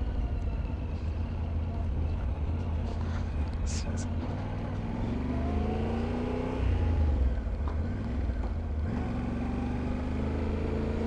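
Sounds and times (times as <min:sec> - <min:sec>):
motorcycle engine accelerating: 0:04.3 - 0:11.0.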